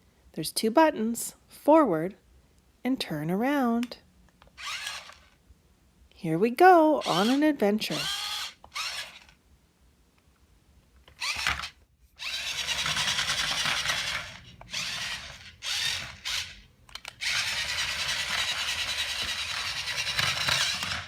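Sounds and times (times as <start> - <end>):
toy car motor whirring: 4.4 - 5.4, 7.0 - 9.4, 11.1 - 21.0.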